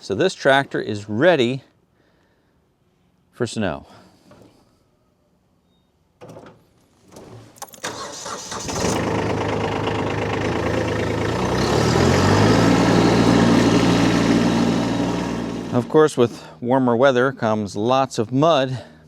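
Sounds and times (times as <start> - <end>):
tractor diesel engine starting: 7.6 - 16.6.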